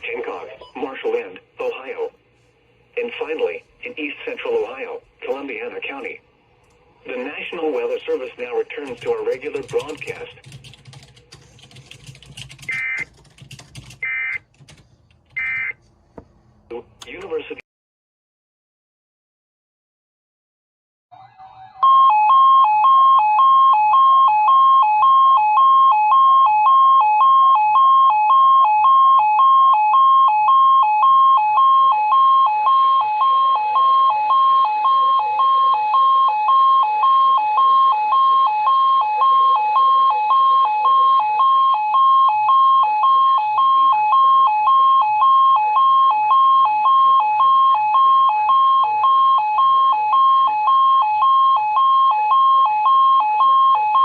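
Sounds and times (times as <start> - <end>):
two-pitch electronic alarm beep: 21.2 - 54.0.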